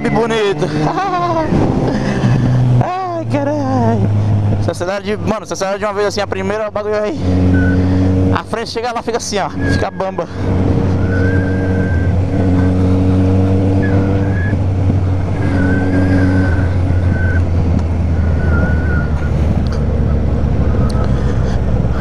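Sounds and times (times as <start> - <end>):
wind rushing over microphone: 0.0 - 5.3, 9.5 - 22.0
motorcycle engine running: 0.0 - 22.0
high wavering whine: 15.3 - 19.4.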